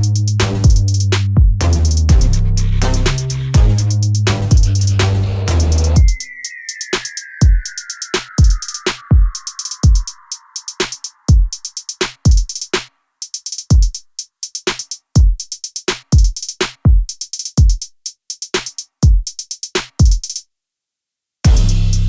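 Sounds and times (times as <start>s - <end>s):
deep kick drums: 0.0s - 5.0s, 16.2s - 17.8s, 21.5s - 22.0s
hi-hat ticks: 0.0s - 20.4s.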